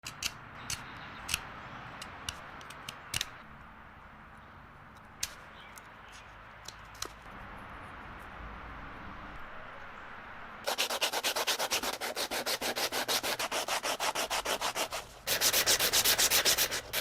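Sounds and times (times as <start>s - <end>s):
sharp clicks: 0.0s - 3.4s
tool scraping wood: 10.7s - 17.0s.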